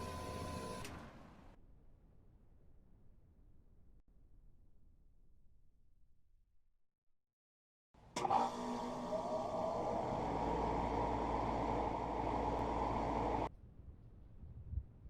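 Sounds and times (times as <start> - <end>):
hvac unit humming and whirring: 8.2 - 13.5.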